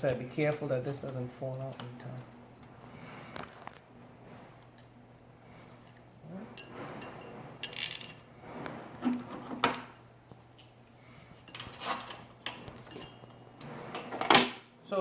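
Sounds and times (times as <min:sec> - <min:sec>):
metal hardware clinking: 0:10.3 - 0:13.5.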